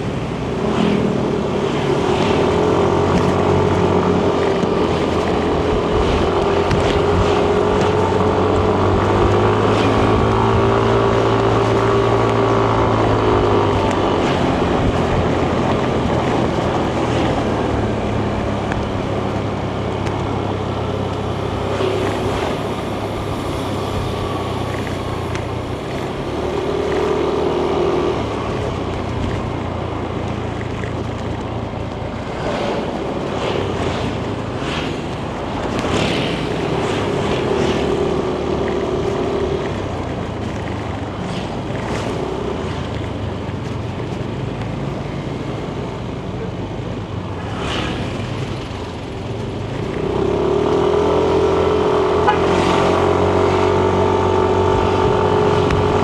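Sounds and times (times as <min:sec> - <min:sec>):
wind noise on microphone: 0:00.0 - 0:45.2
scooter engine running: 0:02.3 - 0:34.5.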